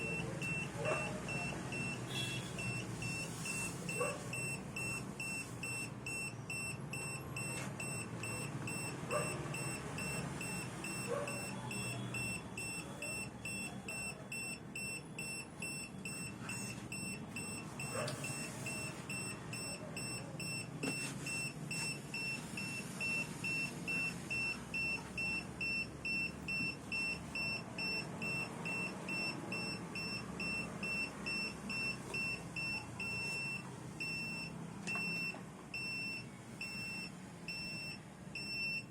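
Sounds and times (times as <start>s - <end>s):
high-pitched alarm beeping: 0.0s - 38.9s.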